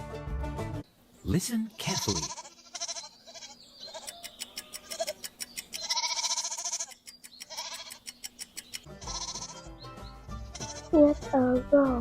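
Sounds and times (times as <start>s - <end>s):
quick regular clicks: 4.0s - 5.9s, 6.9s - 8.9s.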